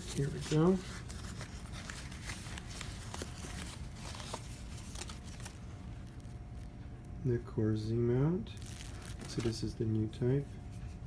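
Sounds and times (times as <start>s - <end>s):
packaging rustling and crinkling: 0.0s - 6.7s, 8.5s - 9.8s.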